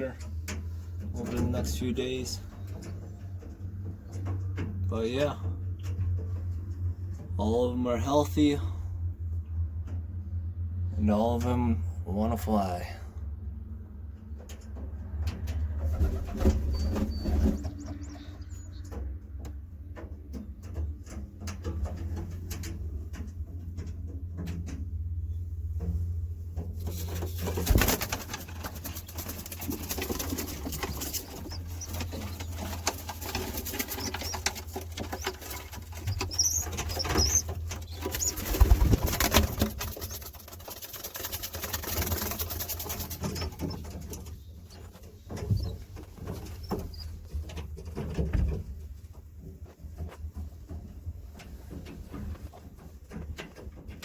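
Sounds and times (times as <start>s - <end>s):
pigeons cooing: 27.0s - 47.2s.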